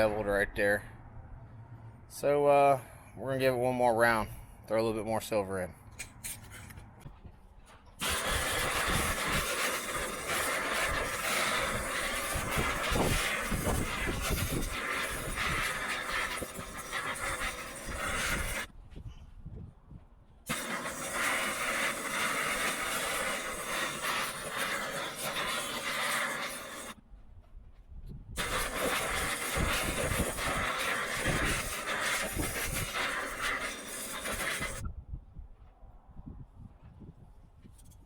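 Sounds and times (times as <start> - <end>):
gas torch flame hissing: 8.0 - 18.7, 20.5 - 27.0, 28.4 - 34.9.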